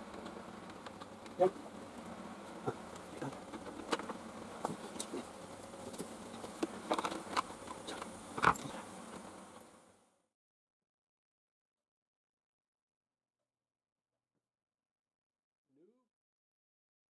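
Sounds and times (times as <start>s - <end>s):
faint buzzing hum: 0.0s - 10.3s.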